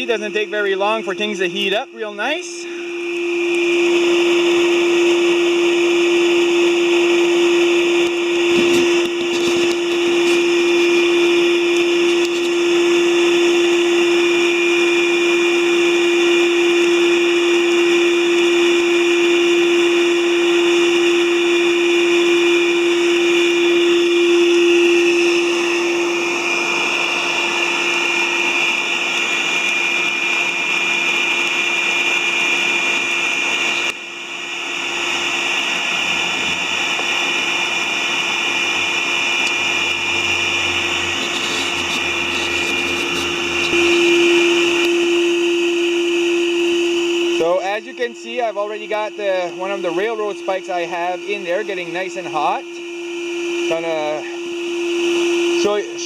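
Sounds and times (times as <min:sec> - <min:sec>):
shop vac motor hum: 0:00.0 - 0:56.0.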